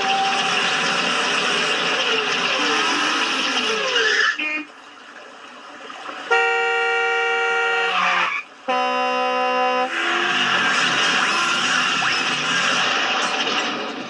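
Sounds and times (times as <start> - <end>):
long horn blasts: 6.3 - 10.7.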